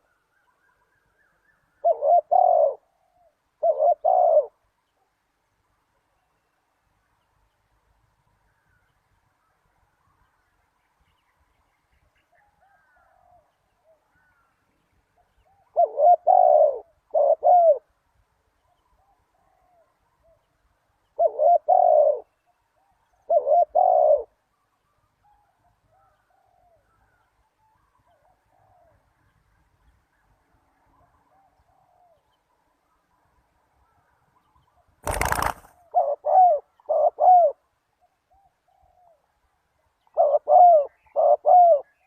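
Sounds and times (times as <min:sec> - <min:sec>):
faint bird calls: 0:00.0 - 0:42.0
dove cooing: 0:01.8 - 0:04.6, 0:15.4 - 0:17.9, 0:21.2 - 0:24.4, 0:35.0 - 0:37.6, 0:40.0 - 0:42.0.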